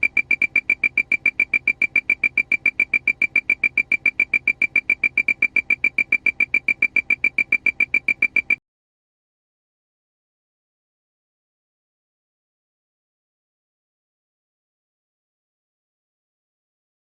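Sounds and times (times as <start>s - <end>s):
high-pitched electronic beeps: 0.0s - 8.6s.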